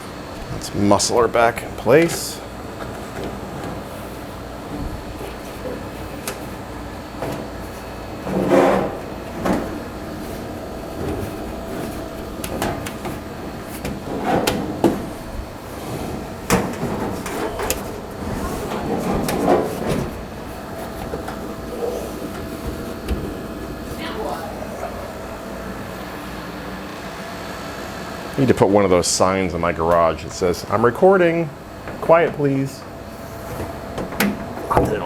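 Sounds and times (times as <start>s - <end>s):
dryer drum clunks and knocks: 0.0s - 26.2s, 31.8s - 35.0s
steady low hum: 0.0s - 35.0s
sheet metal scraping: 0.4s - 25.9s.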